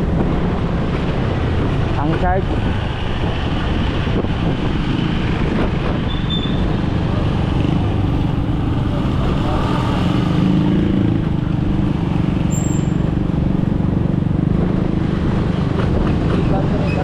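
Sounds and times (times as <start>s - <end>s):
road and wind noise: 0.0s - 17.0s
motorcycle engine running: 4.0s - 16.3s.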